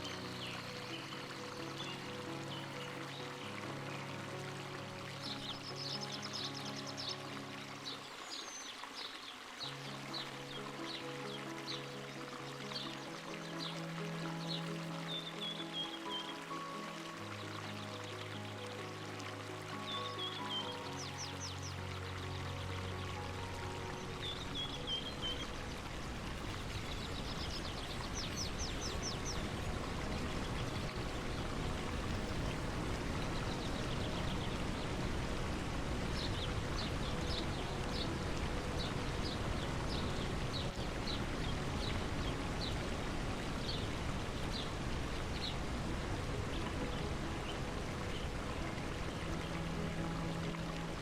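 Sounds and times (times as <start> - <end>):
stream running: 0.0 - 51.0
bird chirping: 26.7 - 32.8.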